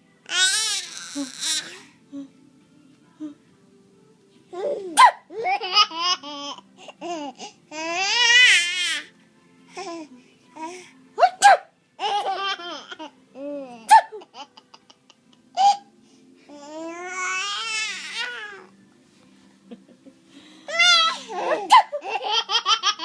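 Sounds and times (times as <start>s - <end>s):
baby laughing: 4.6s - 7.3s, 12.0s - 15.9s, 20.7s - 23.0s.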